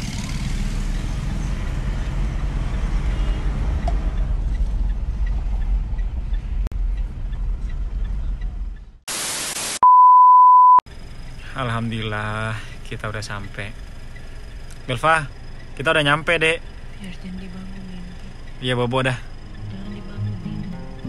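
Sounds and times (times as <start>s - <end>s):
vehicle road rumble: 0.0s - 9.0s, 10.9s - 21.0s
loud even hiss: 9.1s - 9.8s.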